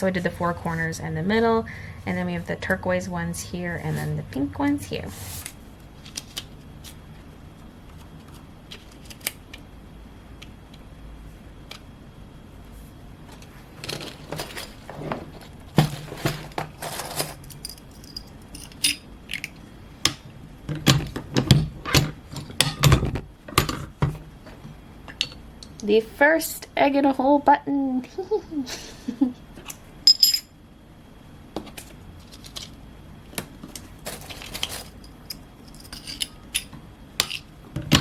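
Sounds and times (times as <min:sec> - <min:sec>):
metal buttons clinking: 0:30.1 - 0:30.4.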